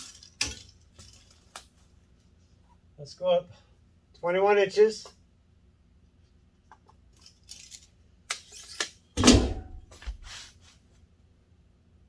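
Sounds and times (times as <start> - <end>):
tape measure scraping and clicking: 7.2 - 9.0.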